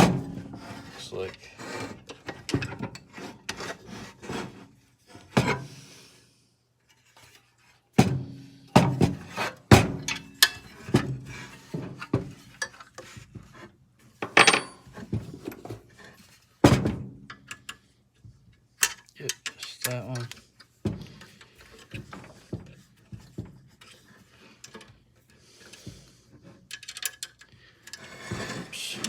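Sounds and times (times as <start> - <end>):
metal parts being handled: 14.2 - 15.0, 26.7 - 28.0
hand tools clicking and knocking: 14.2 - 15.6, 18.8 - 24.0, 26.6 - 29.0.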